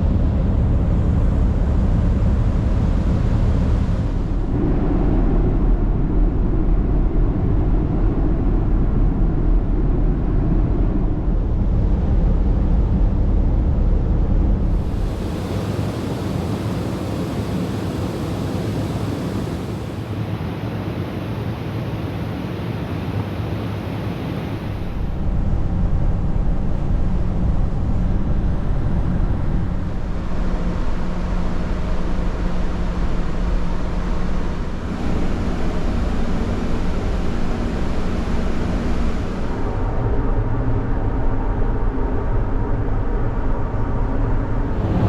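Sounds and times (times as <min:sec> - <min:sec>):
wind: 0:00.0 - 0:45.0
sea wash: 0:14.6 - 0:25.2, 0:44.5 - 0:45.0.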